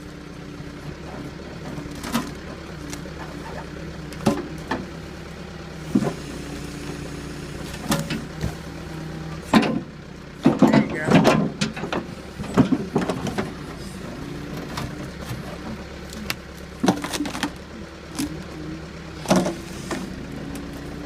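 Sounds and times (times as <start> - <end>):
diesel engine running under load: 0.0 - 21.0.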